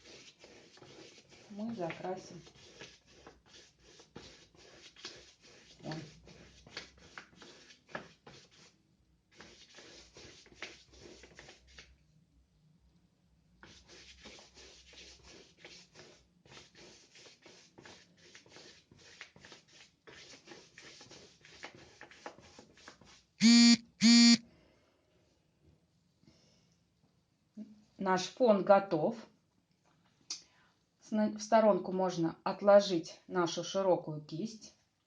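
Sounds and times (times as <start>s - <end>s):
brush scrubbing on paper: 0.0s - 12.0s, 13.6s - 23.4s.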